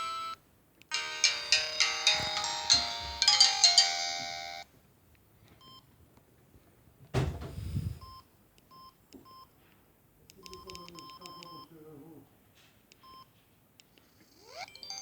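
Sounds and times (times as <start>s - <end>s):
phone ringtone notes: 0.0s - 4.7s, 14.4s - 15.0s
keypad beeps: 10.4s - 11.7s.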